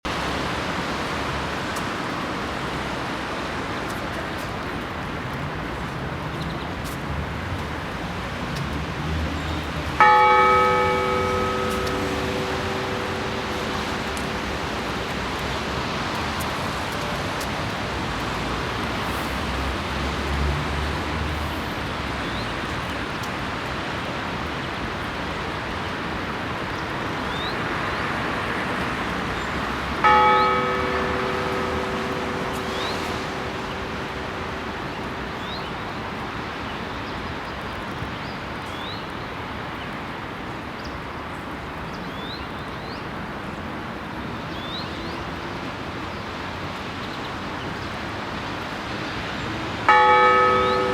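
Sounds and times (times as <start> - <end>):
large church bell tolling: 9.9 - 18.1, 29.9 - 36.2, 49.9 - 50.9.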